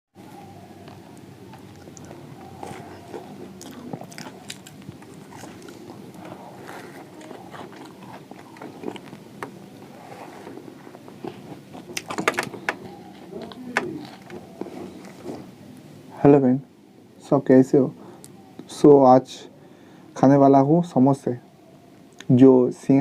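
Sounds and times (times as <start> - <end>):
person chewing crunchy food: 0.8 - 15.5.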